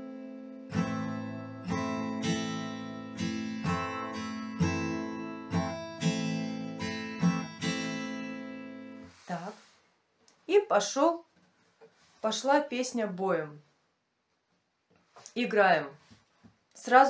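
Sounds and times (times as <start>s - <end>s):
acoustic guitar strumming: 0.0s - 9.2s.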